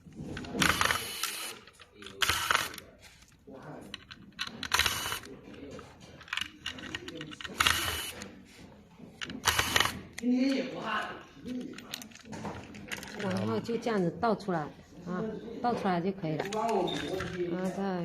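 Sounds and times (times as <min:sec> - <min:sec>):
plastic scraping and clicking: 0:00.0 - 0:08.3, 0:09.0 - 0:13.8.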